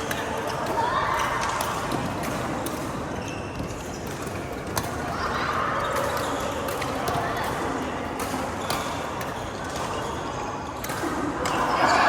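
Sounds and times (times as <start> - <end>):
rackets striking shuttlecock: 5.8 - 11.7.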